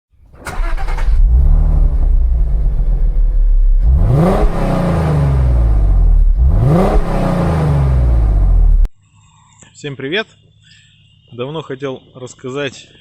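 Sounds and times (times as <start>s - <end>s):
car engine revving: 0.4s - 8.9s.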